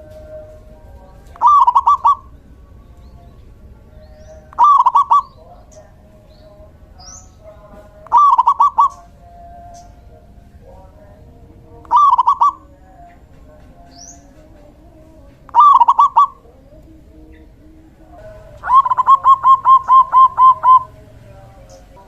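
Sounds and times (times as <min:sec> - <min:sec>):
dove cooing: 0:00.0 - 0:02.5, 0:04.4 - 0:05.8, 0:07.0 - 0:09.8, 0:11.8 - 0:12.8, 0:15.5 - 0:22.0.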